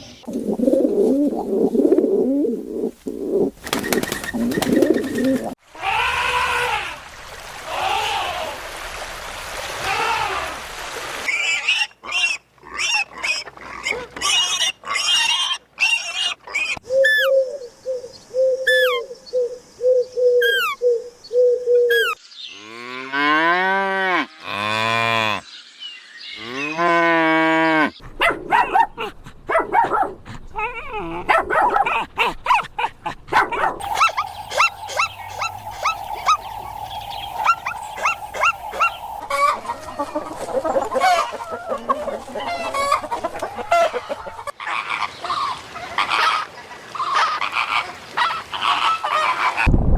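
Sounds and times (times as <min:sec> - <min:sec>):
farm animal calls: 0:33.8 - 0:47.8.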